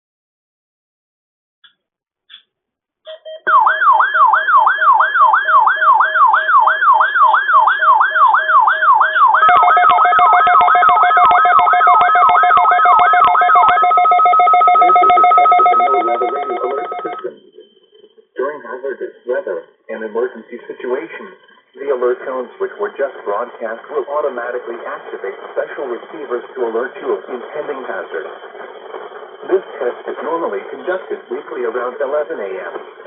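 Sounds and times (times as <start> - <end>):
sweeping siren-like tone: 3.1 - 18.3
steady alert tone: 9.4 - 17.6
short data chirps: 9.5 - 18.3.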